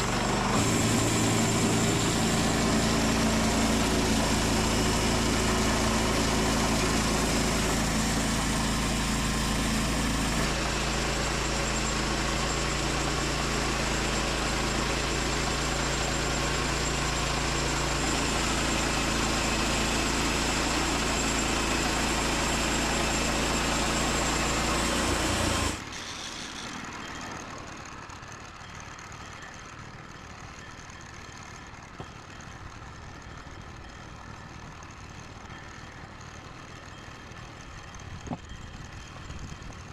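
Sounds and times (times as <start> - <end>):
blade sawing through log: 0.0 - 26.8
band sawmill engine under load: 0.0 - 39.9.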